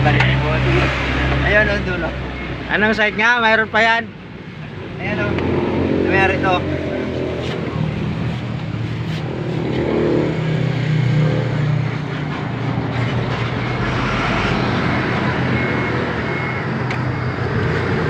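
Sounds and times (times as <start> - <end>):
road noise: 0.0 - 18.0
engine hum: 4.3 - 18.0.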